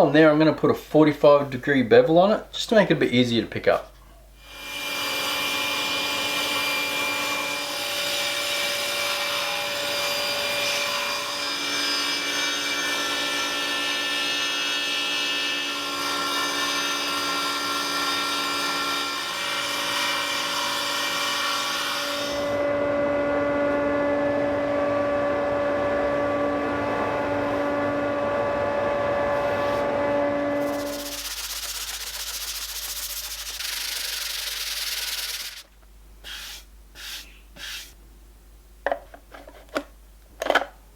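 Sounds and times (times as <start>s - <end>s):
table saw motor hum: 22.4s - 31.9s
saw cutting hiss: 30.6s - 38.0s.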